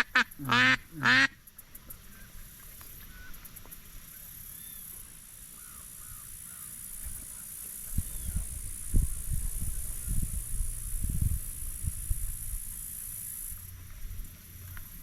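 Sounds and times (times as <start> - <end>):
faint distant bird calls: 0.0 - 8.7
steady high hiss: 0.0 - 15.0
low rumbling on microphone: 7.9 - 12.7.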